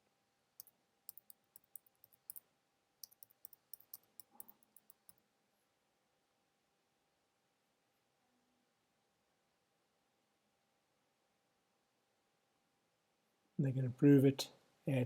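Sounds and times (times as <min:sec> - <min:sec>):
computer mouse clicking: 0:00.6 - 0:02.4, 0:03.0 - 0:05.2.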